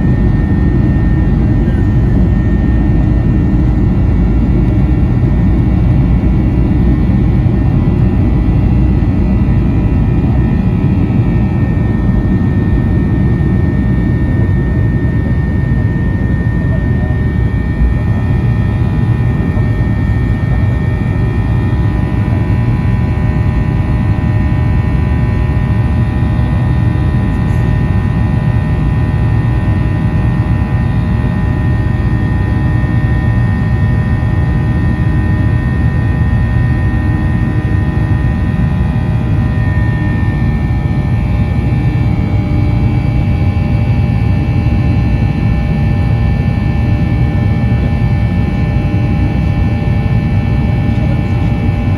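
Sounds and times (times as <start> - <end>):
whining engine tones: 0.0 - 25.2
jet engine rumble in cabin: 0.0 - 51.9.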